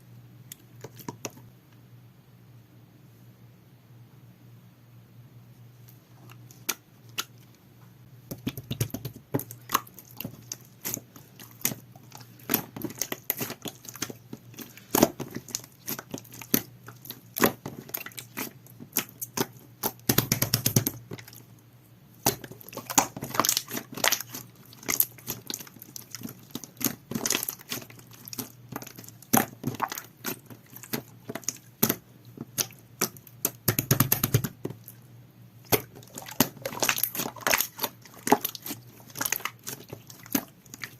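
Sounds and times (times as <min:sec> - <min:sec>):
slime squished with sticky clicks: 0:22.2 - 0:34.9.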